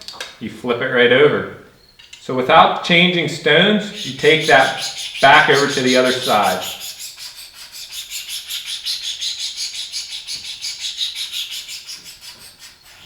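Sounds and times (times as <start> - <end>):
sharpening stone rasping on blade: 4.0 - 13.0.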